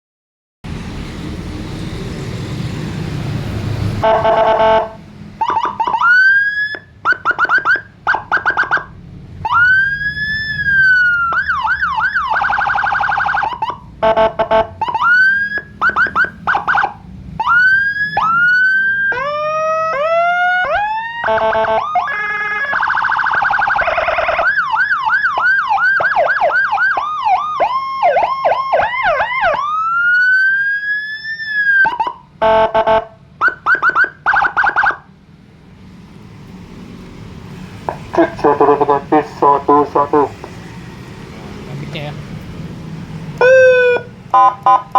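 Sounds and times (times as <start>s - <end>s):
loud rushing noise: 0.7s - 4.2s
siren cycling through tones: 4.0s - 35.1s, 43.4s - 44.9s.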